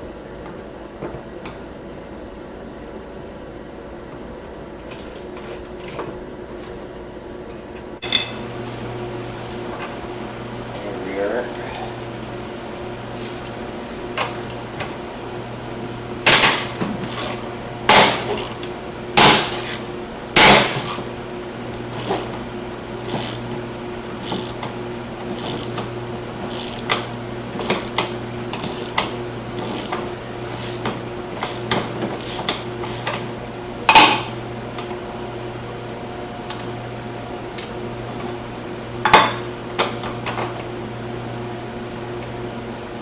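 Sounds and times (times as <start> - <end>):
steady low hum: 0.0 - 43.0
tools clanking on metal: 8.0 - 8.5.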